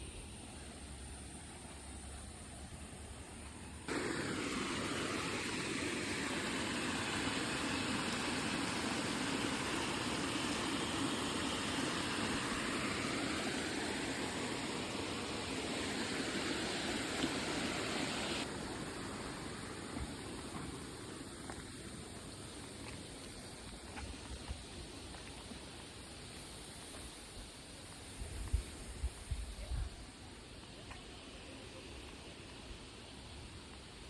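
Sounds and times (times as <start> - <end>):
steady rushing noise: 3.9 - 18.5.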